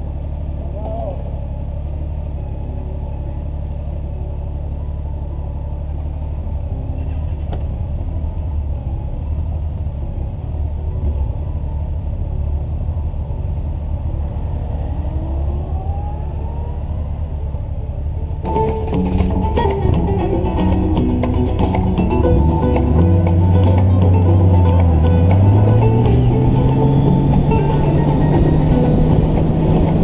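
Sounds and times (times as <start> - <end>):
motorcycle engine: 0.0 - 30.0
wind rumble: 6.5 - 30.0.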